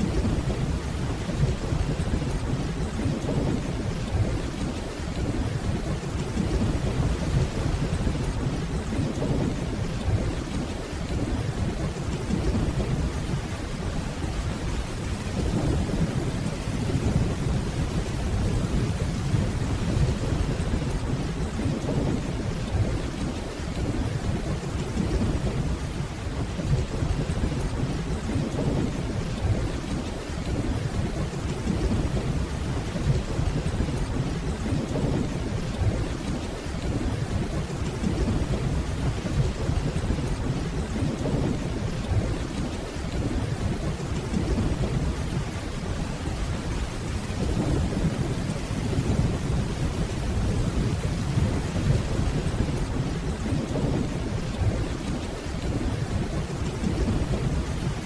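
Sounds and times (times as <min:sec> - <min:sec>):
steady rainfall: 0:00.0 - 0:58.0
distant thunder rumbling: 0:26.6 - 0:58.0.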